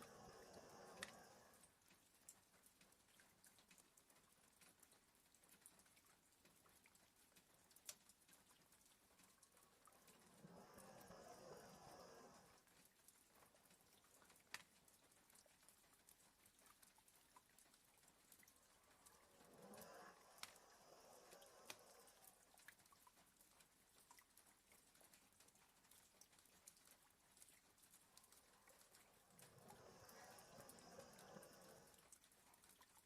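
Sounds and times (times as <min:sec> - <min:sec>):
dog snoring softly: 0:00.0 - 0:02.0, 0:09.1 - 0:14.6, 0:18.0 - 0:23.6, 0:27.6 - 0:33.0
faint rain tapping: 0:00.0 - 0:33.0
sharp drips: 0:00.0 - 0:33.0.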